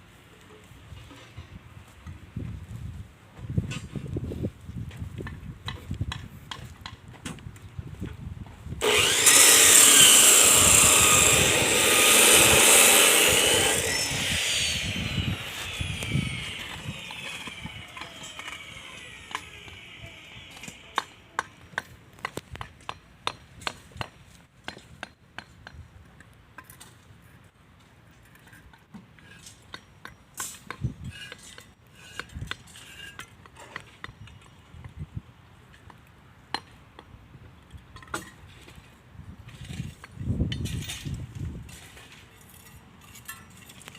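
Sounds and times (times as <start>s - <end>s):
power saw blade whine: 8.8s - 21.2s.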